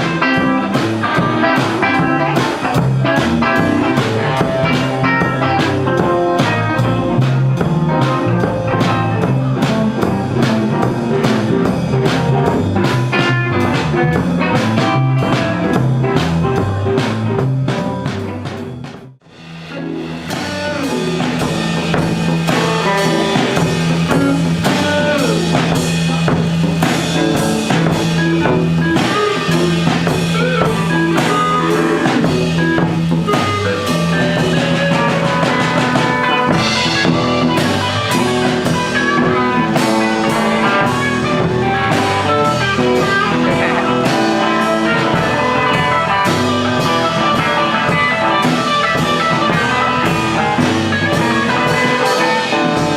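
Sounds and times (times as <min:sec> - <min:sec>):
instrumental rock music: 0:00.0 - 0:52.9.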